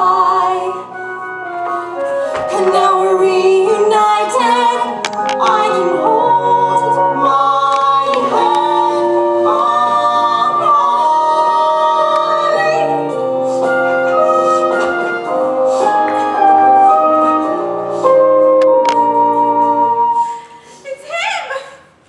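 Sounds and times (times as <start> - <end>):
instrumental accompaniment: 0.0 - 20.8
voices singing: 2.6 - 16.5.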